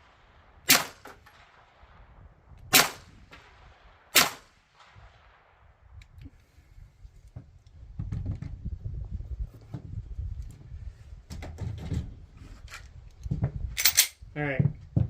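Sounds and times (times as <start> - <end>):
steady low rumble: 0.0 - 11.2
firearms and gear clicking: 12.7 - 14.2.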